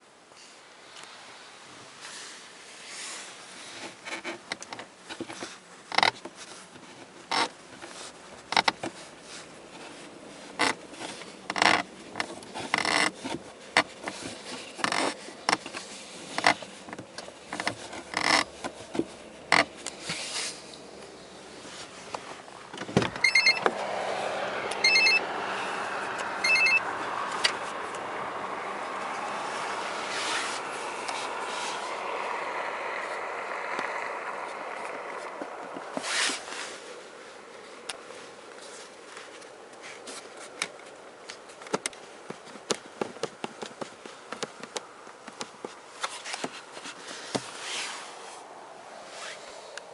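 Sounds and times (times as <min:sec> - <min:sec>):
steady cabin noise: 0:01.6 - 0:23.9
dashboard creaking and clicking: 0:03.8 - 0:23.9, 0:26.1 - 0:36.6, 0:38.8 - 0:47.8
short high electronic beeps: 0:23.2 - 0:23.6, 0:24.8 - 0:25.2, 0:26.4 - 0:26.8.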